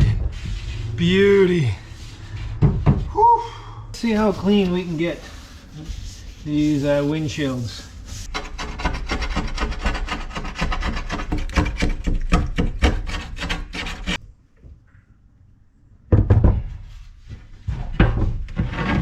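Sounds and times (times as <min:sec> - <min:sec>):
rubbing and handling noise: 0:00.0 - 0:14.2.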